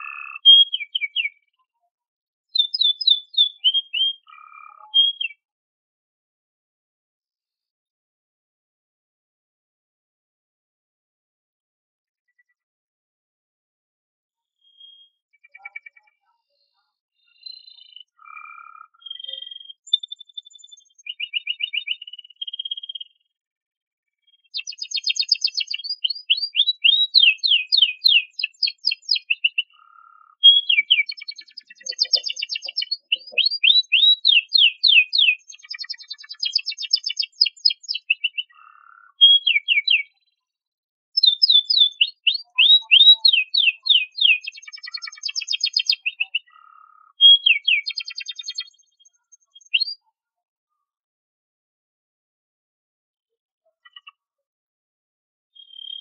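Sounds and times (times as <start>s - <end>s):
canary singing trills: 0.0s - 1.5s, 2.5s - 5.4s, 14.6s - 23.2s, 24.3s - 40.4s, 41.2s - 50.2s, 55.6s - 56.0s.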